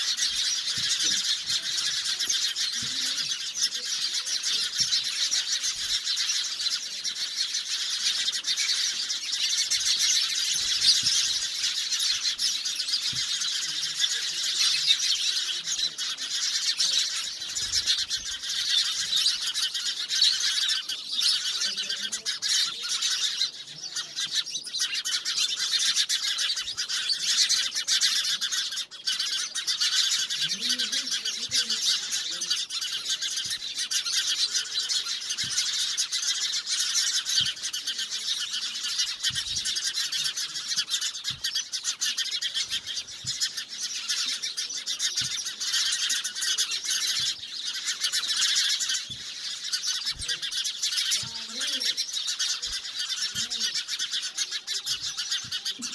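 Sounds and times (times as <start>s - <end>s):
birds chirping and twittering: 0.0s - 55.9s
faint lower bird calls: 0.0s - 55.9s.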